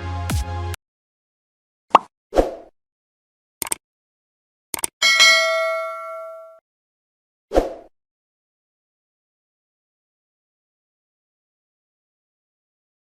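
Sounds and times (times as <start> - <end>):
bell-like ding: 5.0 - 6.6.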